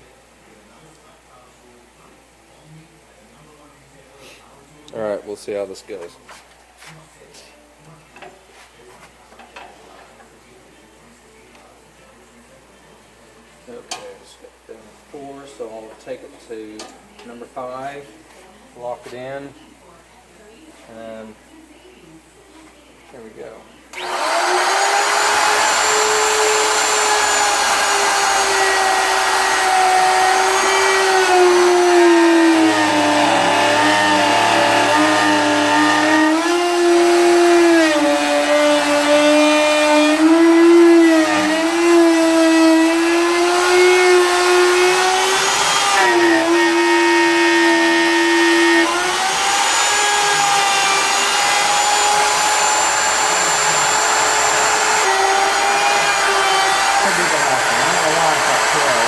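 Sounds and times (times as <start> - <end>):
router motor whine cutting wood: 24.0 - 59.0.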